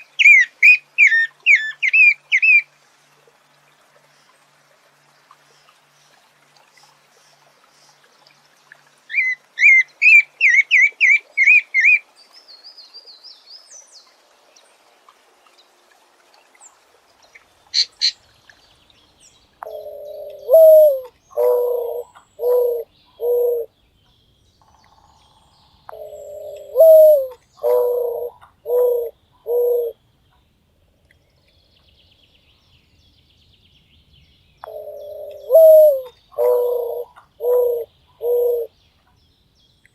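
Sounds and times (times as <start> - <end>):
dove cooing: 19.6 - 23.7, 25.9 - 30.0, 34.6 - 38.7.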